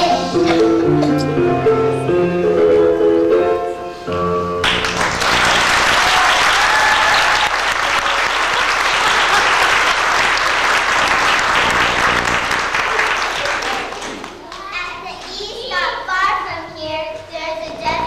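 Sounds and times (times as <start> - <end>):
music: 0.0 - 5.9
audience applauding: 4.6 - 15.2.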